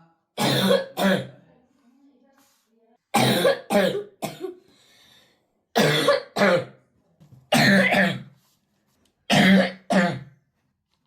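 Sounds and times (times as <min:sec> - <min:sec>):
boy coughing: 0:00.4 - 0:01.3, 0:03.2 - 0:04.6, 0:05.8 - 0:06.7, 0:07.5 - 0:08.3, 0:09.3 - 0:10.3.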